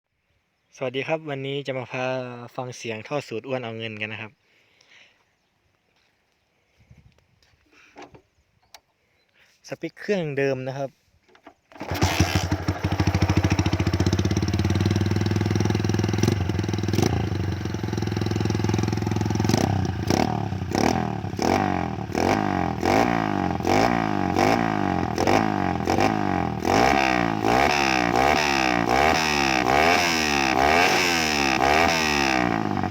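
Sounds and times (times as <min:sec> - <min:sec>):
motorcycle engine idling and revving: 0:11.7 - 0:32.9.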